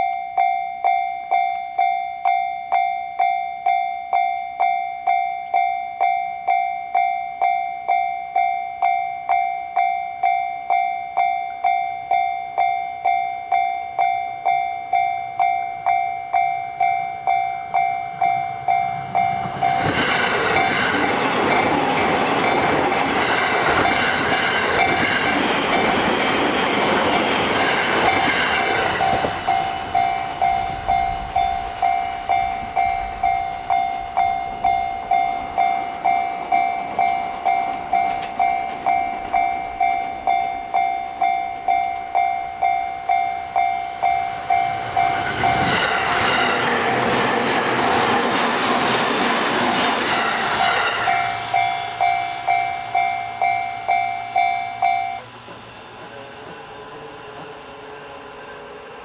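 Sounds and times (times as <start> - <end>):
level-crossing warning bell: 0.0 - 59.0
electric train rumbling past: 10.2 - 59.0.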